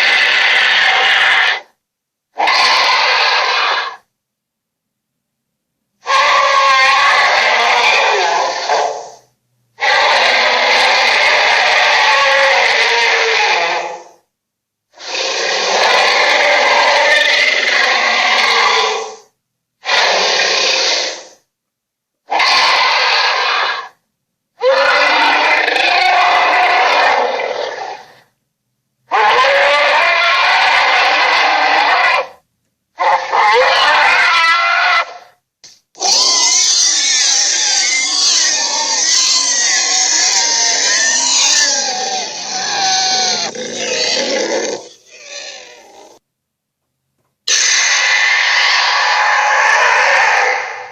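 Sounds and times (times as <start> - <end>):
monster calls: 36.0 - 46.2, 47.5 - 50.9.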